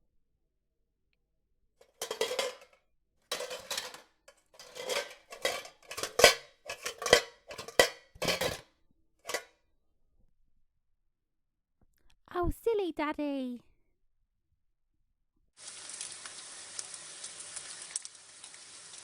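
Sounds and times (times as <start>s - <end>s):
cutlery and dishes clattering: 1.8s - 8.6s, 9.3s - 9.5s
metal clinking on crockery: 1.8s - 8.6s, 9.3s - 9.5s.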